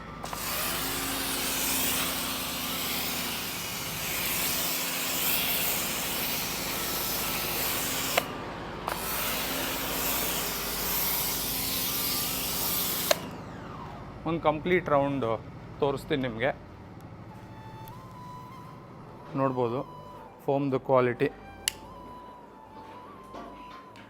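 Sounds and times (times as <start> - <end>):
pump motor hum: 0.0 - 20.3
pressure washer spray hiss: 0.3 - 8.3, 8.9 - 13.2
click: 21.6 - 21.9.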